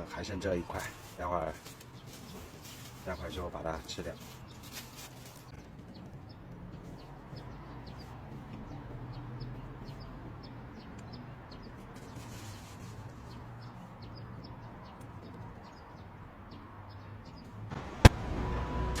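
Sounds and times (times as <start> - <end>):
small birds chirping: 0.0 - 18.4.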